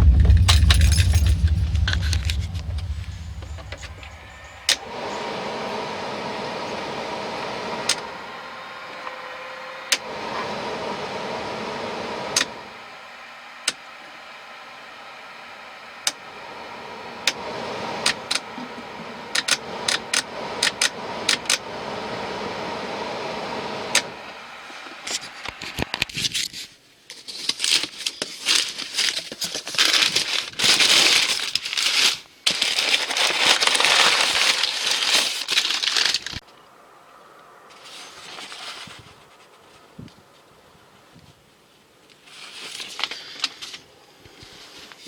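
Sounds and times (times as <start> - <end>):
harsh rattling and crackling: 0.0 - 4.9
blower fan humming with clicks: 0.0 - 26.1.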